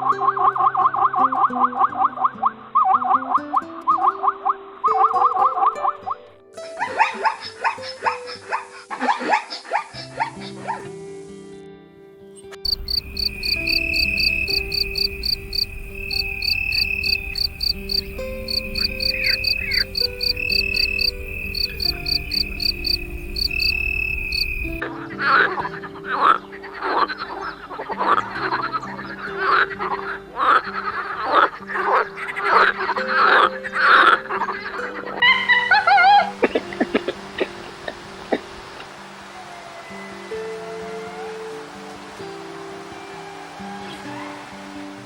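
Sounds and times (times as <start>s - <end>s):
soft background music: 0.0s - 45.0s
high steady insect trill: 12.6s - 24.8s
frog croaking: 12.6s - 38.9s
insects chirping: 12.6s - 45.0s.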